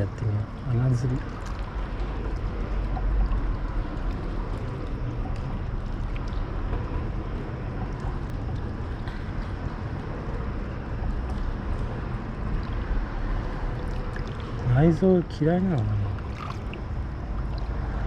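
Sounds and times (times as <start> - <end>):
wind rumbling on microphone: 0.0 - 18.0
water washing around rocks: 11.0 - 15.0, 15.6 - 18.0.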